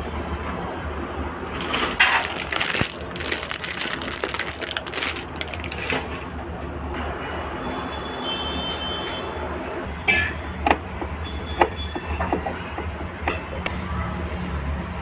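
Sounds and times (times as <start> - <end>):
crackling and crunching: 1.5 - 6.4.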